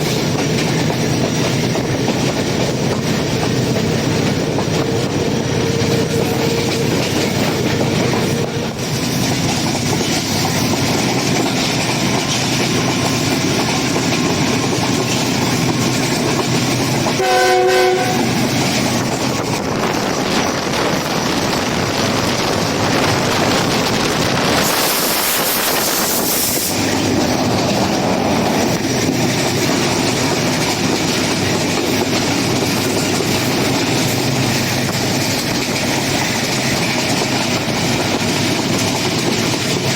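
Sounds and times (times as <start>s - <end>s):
train wheels on track: 0.0s - 39.9s
train horn blast: 17.2s - 18.6s.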